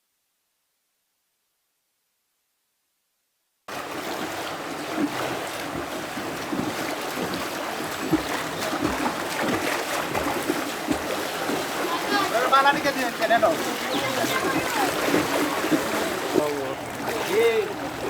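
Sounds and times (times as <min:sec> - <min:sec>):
floodwater rushing: 0:03.7 - 0:18.0
small splashes and knocks: 0:03.7 - 0:18.0.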